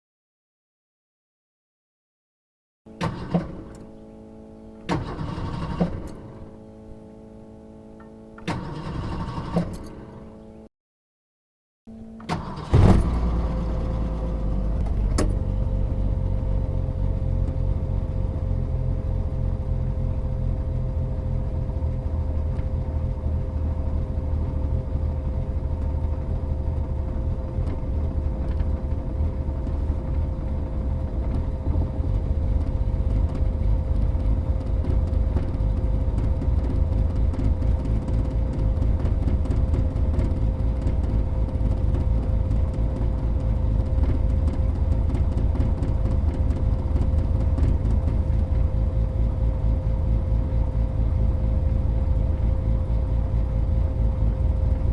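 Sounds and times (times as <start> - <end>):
car engine starting and idling: 2.9 - 10.6, 11.9 - 54.9
engine cranking: 4.9 - 6.3, 8.4 - 10.0, 12.3 - 18.4.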